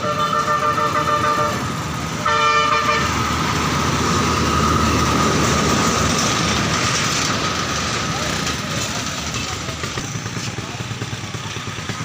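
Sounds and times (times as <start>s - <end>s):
vehicle horn: 0.0s - 3.2s
street traffic: 0.0s - 12.0s.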